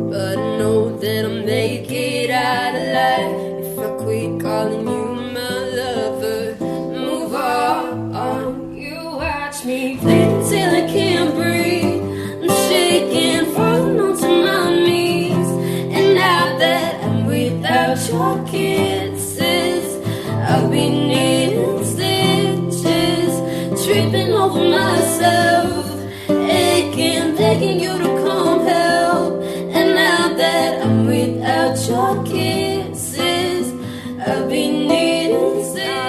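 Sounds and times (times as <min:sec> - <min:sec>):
acoustic guitar: 0:00.0 - 0:36.0
woman singing a slow ballad: 0:00.0 - 0:36.0.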